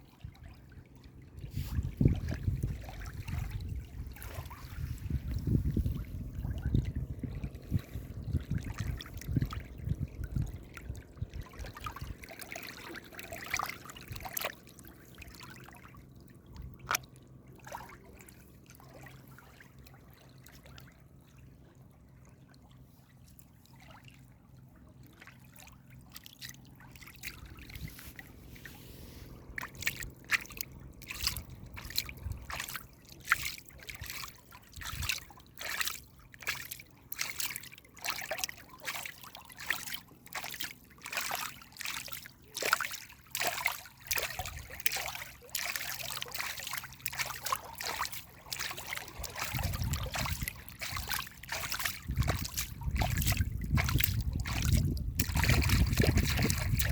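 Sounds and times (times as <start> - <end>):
water trickling and splashing: 0.0 - 56.9
low rumble: 1.4 - 11.4.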